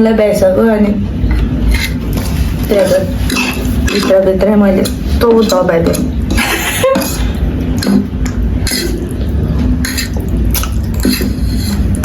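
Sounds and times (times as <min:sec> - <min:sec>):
steady low hum: 0:00.0 - 0:12.0
person slurping noodles: 0:06.3 - 0:09.2, 0:09.8 - 0:12.0.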